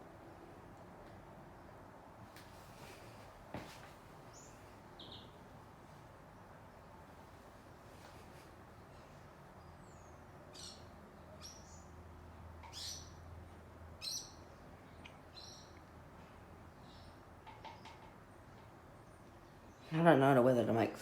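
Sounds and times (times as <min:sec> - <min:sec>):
faint bird chirps: 0:04.3 - 0:05.4.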